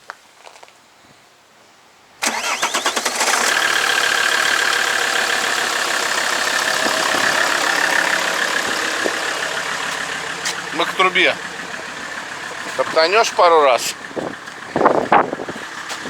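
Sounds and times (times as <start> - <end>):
diesel engine idling: 2.2 - 16.0
starter motor cranking: 2.2 - 16.0.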